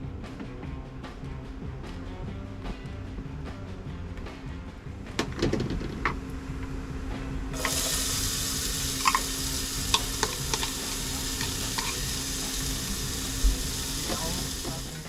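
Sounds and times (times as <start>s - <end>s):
food sizzling in a pan: 7.6s - 15.0s.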